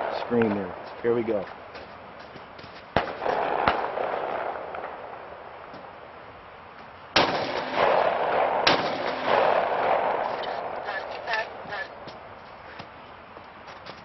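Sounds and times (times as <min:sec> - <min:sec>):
sharp crack with lingering echo: 0:02.9 - 0:06.0, 0:07.1 - 0:11.6
pistol shots: 0:03.0 - 0:05.2, 0:07.2 - 0:11.5.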